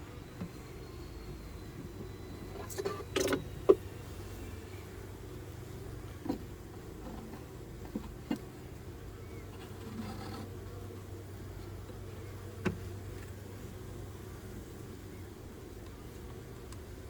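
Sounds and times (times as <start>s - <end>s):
honeybees buzzing: 0.0s - 17.0s.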